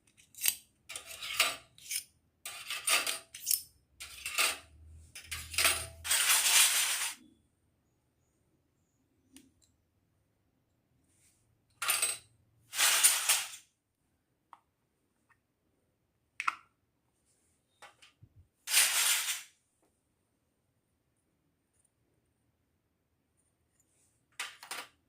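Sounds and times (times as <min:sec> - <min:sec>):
toy kitchen pieces clattering: 0:00.0 - 0:07.3, 0:11.7 - 0:13.7, 0:18.7 - 0:19.6, 0:24.3 - 0:25.0.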